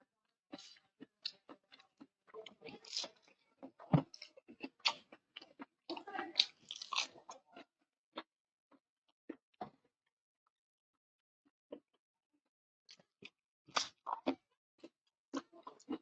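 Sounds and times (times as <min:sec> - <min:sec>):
person chewing and crunching food: 0:00.5 - 0:08.3, 0:12.9 - 0:16.0.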